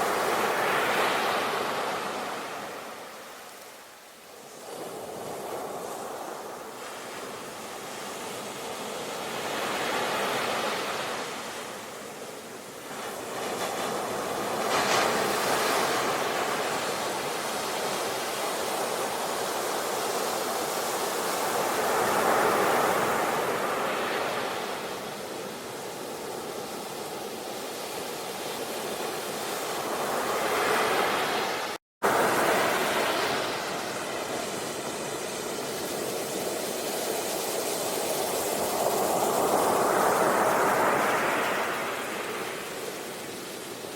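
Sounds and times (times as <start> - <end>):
waves breaking on shore: 0.0 - 43.9.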